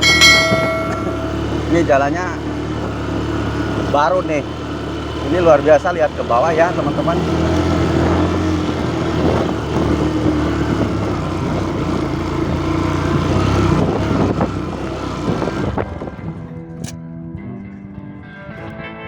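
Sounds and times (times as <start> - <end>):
motorcycle engine running: 0.0 - 17.9.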